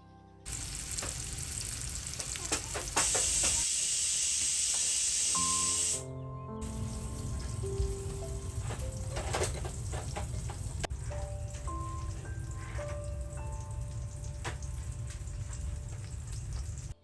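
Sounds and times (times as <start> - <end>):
soft background music: 0.0 - 1.6, 5.3 - 17.0
food sizzling in oil: 0.5 - 17.0.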